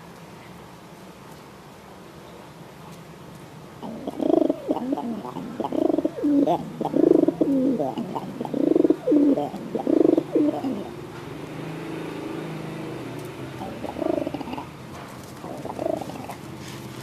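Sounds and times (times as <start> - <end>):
pigeons cooing: 3.8 - 16.6.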